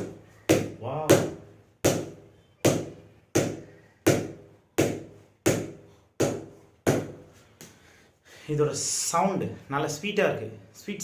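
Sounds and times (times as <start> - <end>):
person speaking: 0.6 - 1.5, 8.4 - 11.0.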